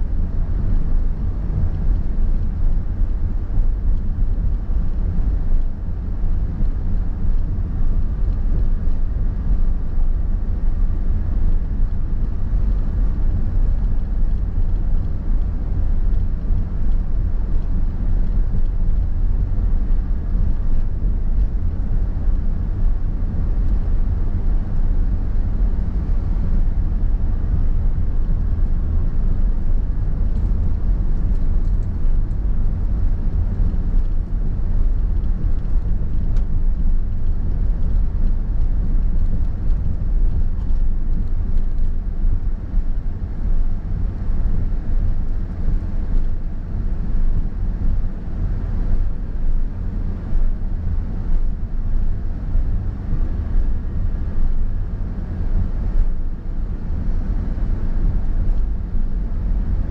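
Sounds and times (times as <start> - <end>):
car interior engine and road noise: 0.0 - 59.9.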